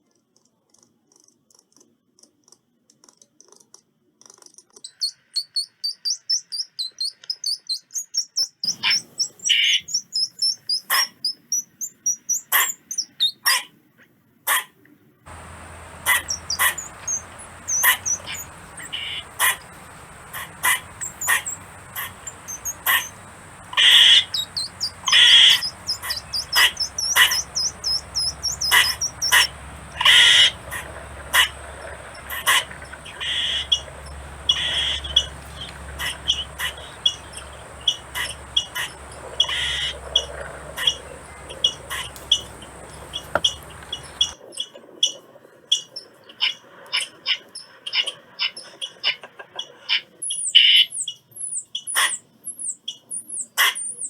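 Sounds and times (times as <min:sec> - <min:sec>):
squirrel chirps and barks: 0:08.7 - 0:09.7, 0:15.3 - 0:44.4
low background hum: 0:15.3 - 0:44.4.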